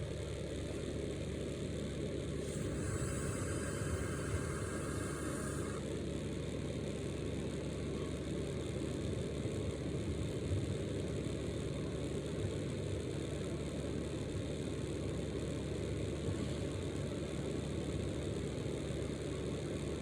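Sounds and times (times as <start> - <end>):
small electric fan whirring: 2.2 - 6.4.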